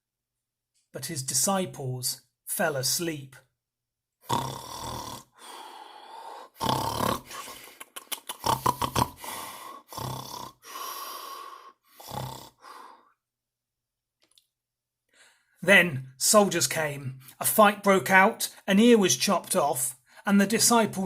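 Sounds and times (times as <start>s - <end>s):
rasping snores: 4.2s - 7.6s, 8.3s - 13.1s
breathy out-breaths: 5.3s - 7.8s, 8.6s - 10.0s, 10.6s - 13.2s, 15.1s - 15.6s.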